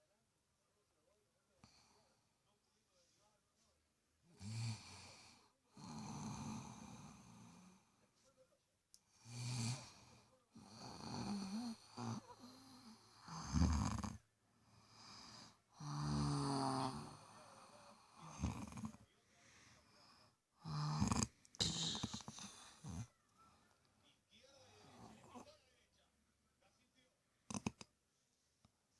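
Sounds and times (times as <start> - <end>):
person snoring with low rattle: 4.4 - 7.8, 9.2 - 19.0, 20.6 - 23.1, 27.5 - 27.8.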